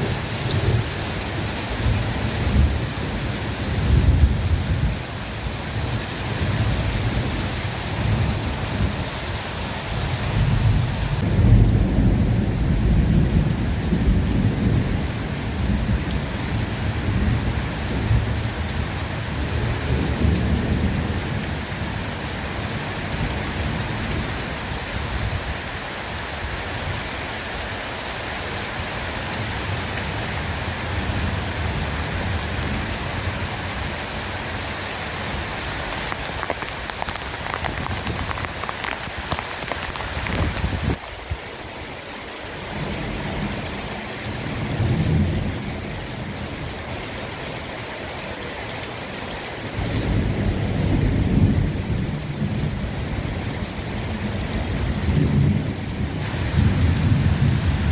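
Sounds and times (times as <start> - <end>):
rain falling on foliage: 0.0 - 57.9
thunder rumble: 10.3 - 21.8, 35.8 - 41.0, 49.8 - 57.9.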